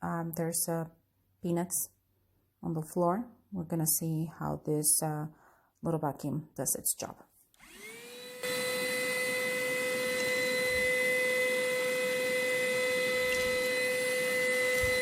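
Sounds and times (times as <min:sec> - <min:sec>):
cordless vacuum cleaner running: 0:07.6 - 0:15.0.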